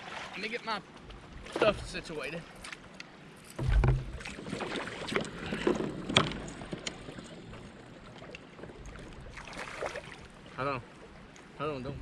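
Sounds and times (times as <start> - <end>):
low thump: 3.6 - 4.3.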